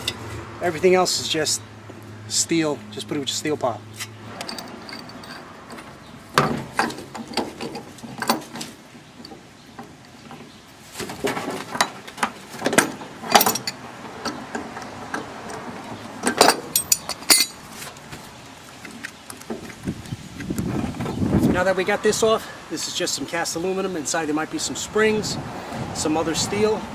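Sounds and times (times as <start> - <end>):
hand tools clicking and knocking metal: 4.0 - 18.0.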